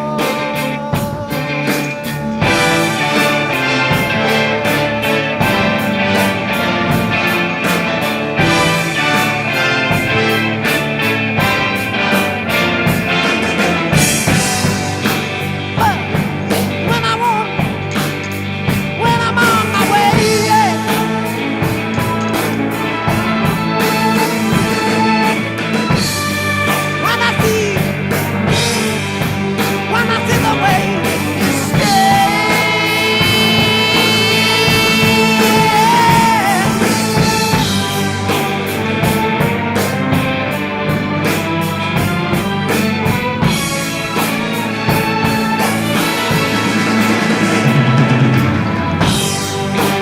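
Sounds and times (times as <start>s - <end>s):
drum kit beat: 0.0s - 50.0s
electric guitar: 0.0s - 50.0s
instrumental rock music: 0.0s - 50.0s.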